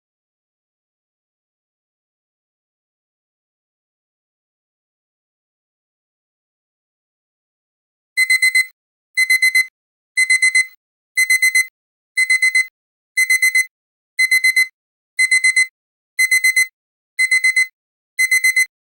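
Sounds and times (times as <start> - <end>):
digital alarm clock beeping: 8.2 - 18.7.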